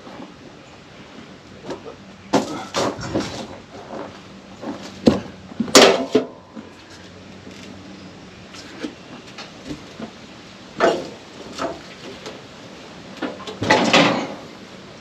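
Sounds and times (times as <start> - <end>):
faint steady hum: 0.0 - 15.0
knocks and clatters: 13.2 - 14.5.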